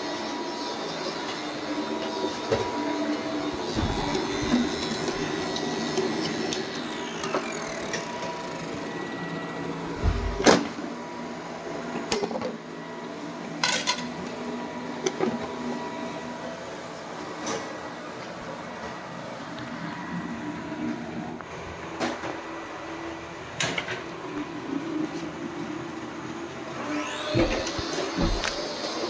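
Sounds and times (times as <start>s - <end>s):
robot vacuum cleaner whirring: 1.1s - 11.4s, 26.7s - 29.0s
falling whine: 3.4s - 6.0s
sharp knocks: 3.5s - 5.5s, 10.0s - 10.6s, 27.3s - 28.6s.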